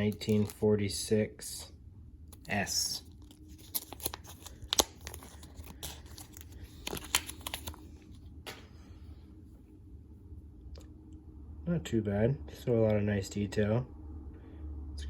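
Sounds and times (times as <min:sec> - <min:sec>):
packaging crinkling and tearing: 0:00.0 - 0:00.6, 0:02.3 - 0:08.2.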